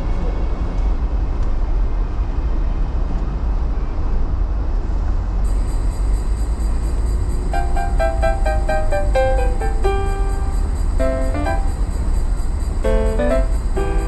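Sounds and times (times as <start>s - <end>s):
faint music: 4.8s - 14.0s.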